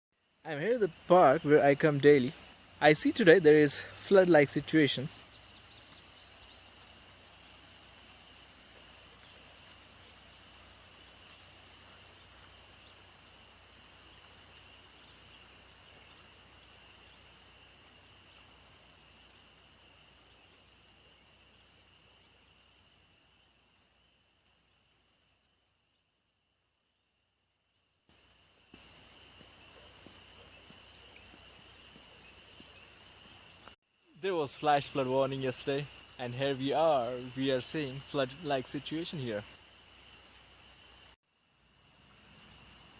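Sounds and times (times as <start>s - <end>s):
soft hiss: 0.2s - 42.9s
high-pitched insect trill: 28.1s - 42.9s.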